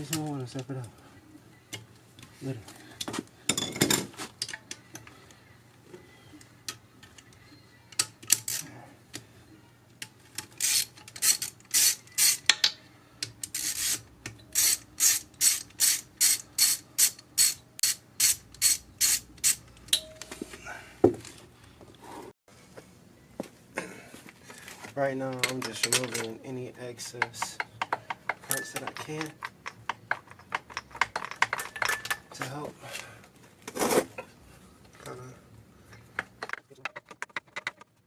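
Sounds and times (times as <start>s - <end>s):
hand ratchet clicking: 10.6s - 14.0s, 14.6s - 19.6s.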